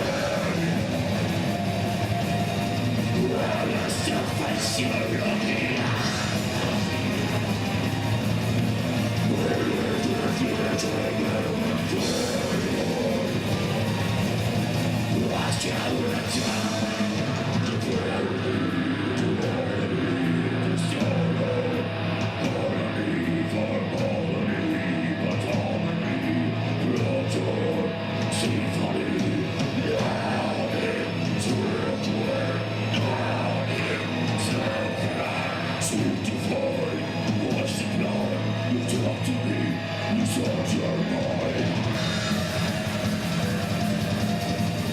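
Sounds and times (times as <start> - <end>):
person singing or shouting: 0.0 - 8.0, 9.1 - 44.9
heavy rock distorted guitar: 0.0 - 44.9.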